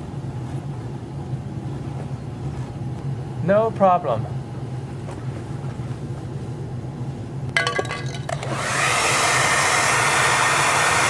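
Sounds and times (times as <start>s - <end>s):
low steady hum: 0.0s - 8.8s
hair dryer blowing: 8.3s - 11.0s.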